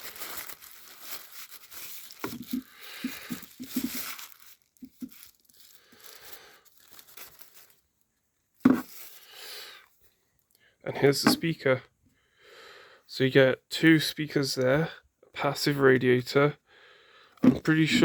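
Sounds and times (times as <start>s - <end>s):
packaging rustling: 0.0s - 8.0s, 8.6s - 9.3s.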